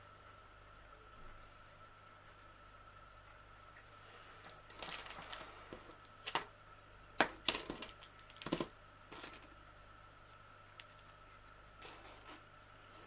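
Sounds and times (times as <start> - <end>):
small plastic pieces clicking: 7.2 - 9.5.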